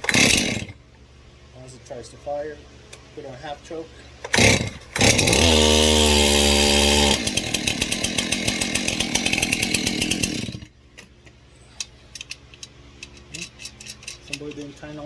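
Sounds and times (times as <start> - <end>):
two-stroke chainsaw revving: 0.0 - 0.8, 4.3 - 10.7.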